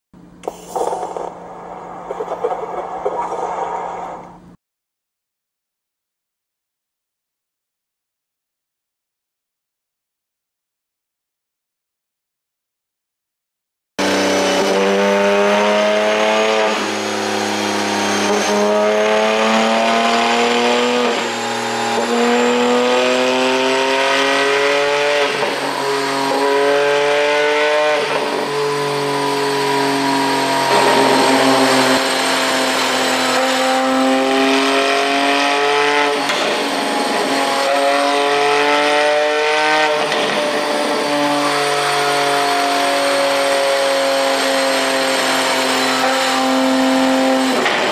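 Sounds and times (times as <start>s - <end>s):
exhaust crackles and pops: 2.1s - 4.4s
sports car engine revving through gears: 14.0s - 47.9s.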